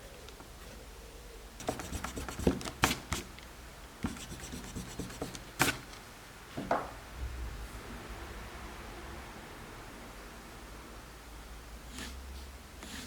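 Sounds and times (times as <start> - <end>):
pencil scratching on paper: 1.6 - 3.3, 4.0 - 5.8, 11.9 - 12.2, 12.8 - 13.0.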